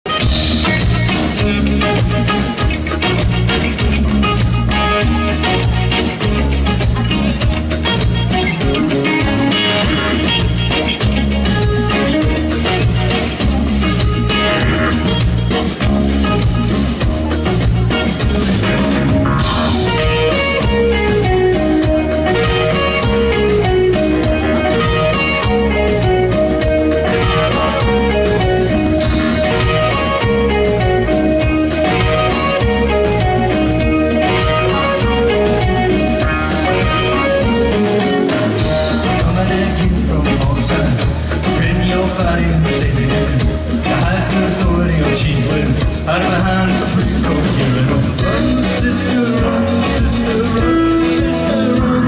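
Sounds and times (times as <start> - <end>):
rock band playing live: 0.0 - 52.0.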